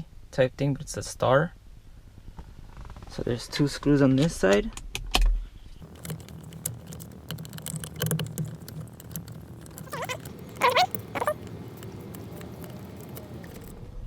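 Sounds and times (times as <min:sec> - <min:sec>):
screw squeaking: 0:05.8 - 0:13.8.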